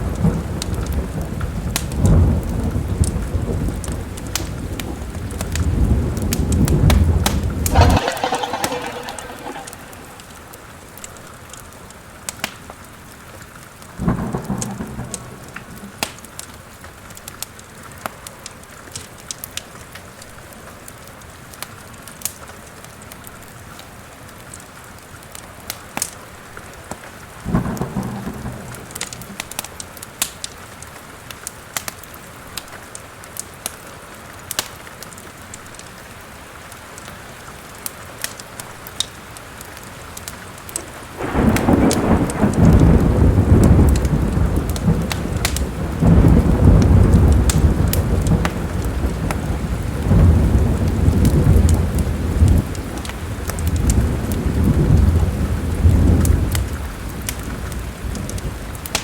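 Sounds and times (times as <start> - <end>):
steady rain: 0.0 - 10.9, 11.8 - 59.0
thunder rumbling: 3.4 - 10.6, 41.2 - 52.8
fireplace fire crackling: 7.7 - 10.6.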